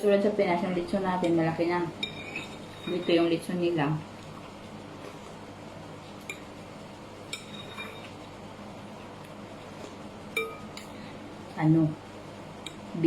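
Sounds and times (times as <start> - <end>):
cutlery clinking against dishes: 7.3 - 8.1, 10.4 - 11.0.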